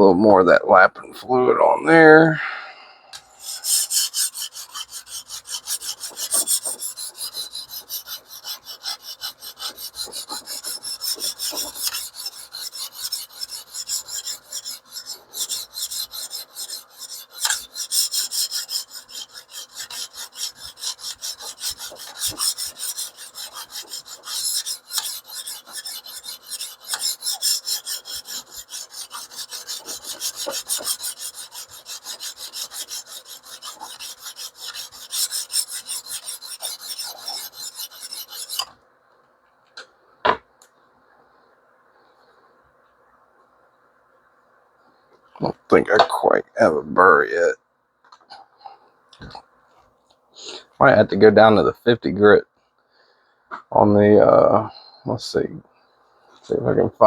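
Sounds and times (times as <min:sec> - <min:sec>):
sharpening stone rasping on blade: 0:03.3 - 0:38.7.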